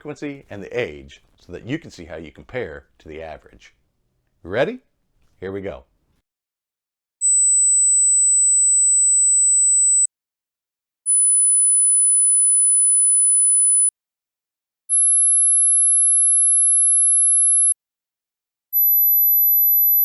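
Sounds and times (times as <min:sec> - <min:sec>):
high-pitched sine-wave tones: 0:11.1 - 0:13.9, 0:18.8 - 0:20.0.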